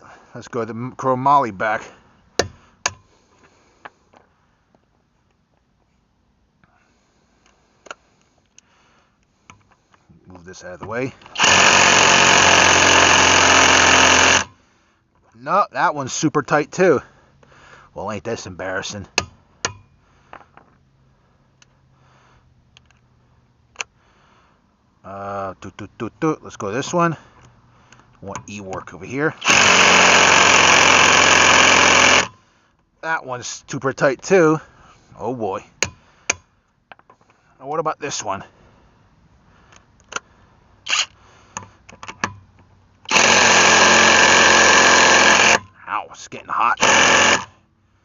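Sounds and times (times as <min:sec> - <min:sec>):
impact wrench hammering: 0:02.4 - 0:03.1, 0:11.3 - 0:14.5, 0:29.4 - 0:32.4, 0:43.1 - 0:45.7, 0:46.8 - 0:47.5
tools clicking and knocking: 0:40.9 - 0:45.7.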